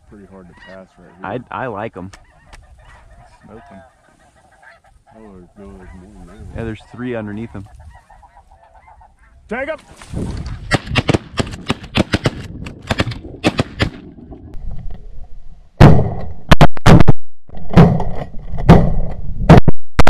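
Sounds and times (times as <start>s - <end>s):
shotgun shots: 10.7s - 14.0s.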